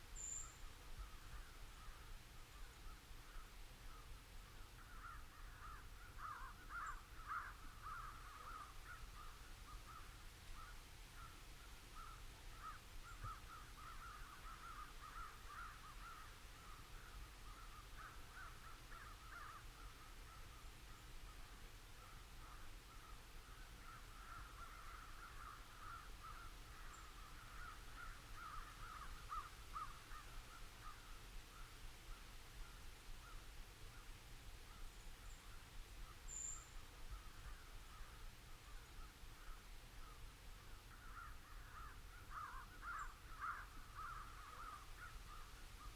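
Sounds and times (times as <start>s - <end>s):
crows cawing: 4.8s - 11.4s, 12.0s - 20.4s, 23.8s - 31.1s, 40.9s - 45.5s.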